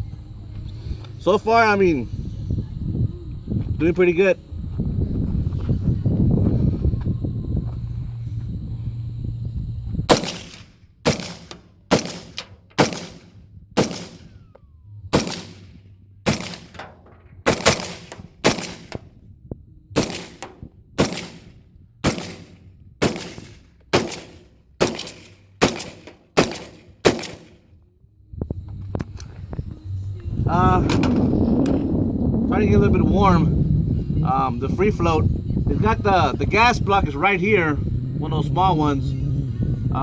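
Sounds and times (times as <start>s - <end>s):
rifle shots: 10.1s - 14.4s, 15.1s - 19.0s, 20.0s - 27.6s.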